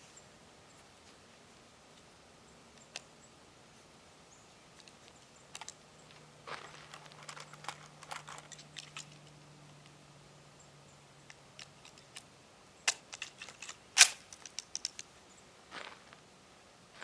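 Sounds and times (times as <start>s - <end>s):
pistol metallic clicks and rattles: 4.8s - 5.8s, 6.8s - 10.0s, 11.2s - 12.3s, 12.9s - 15.1s.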